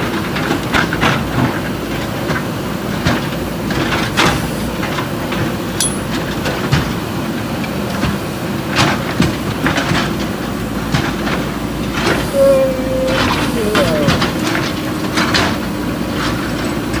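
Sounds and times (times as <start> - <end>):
metal clanks and knocks: 5.8 - 6.3.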